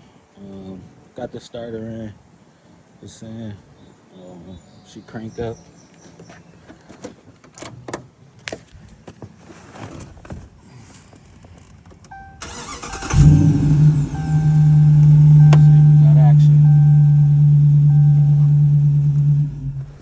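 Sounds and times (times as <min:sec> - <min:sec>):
car engine cranking and idling: 0:11.6 - 0:20.0
short electronic beep: 0:12.1 - 0:18.7.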